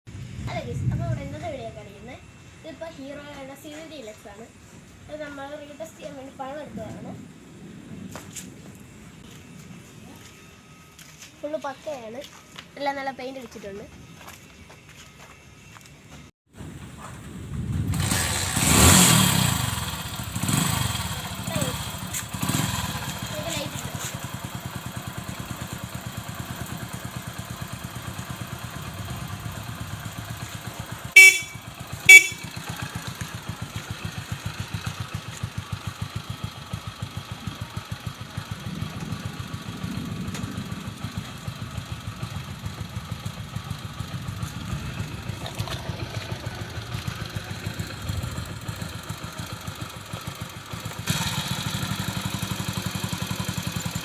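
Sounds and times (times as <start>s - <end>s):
motorcycle engine idling: 18.0s - 54.0s
electric horn beeps: 31.1s - 33.1s.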